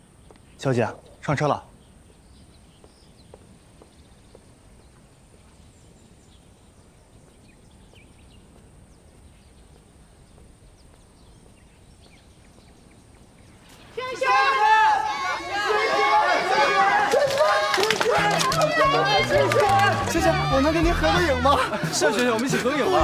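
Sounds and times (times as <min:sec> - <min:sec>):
low steady hiss: 0:00.0 - 0:15.3.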